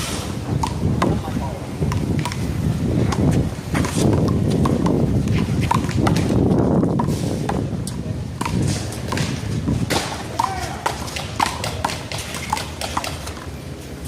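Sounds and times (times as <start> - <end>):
rubber ball smacking wall: 5.6 - 7.6.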